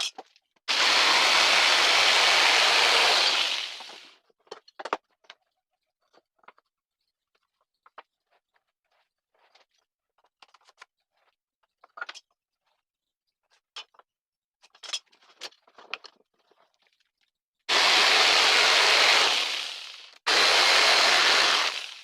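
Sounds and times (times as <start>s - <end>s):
electric power tool running: 0.7s - 4.1s, 17.7s - 22.0s.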